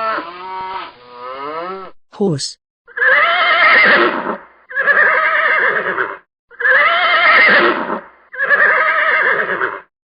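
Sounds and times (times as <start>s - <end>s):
horse whinnying: 2.9s - 9.9s.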